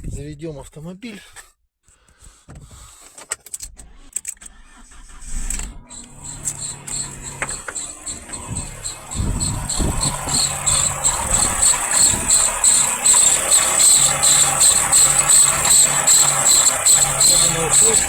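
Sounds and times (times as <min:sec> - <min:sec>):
car engine idling: 0:04.7 - 0:18.0
water pump squealing: 0:05.9 - 0:18.0.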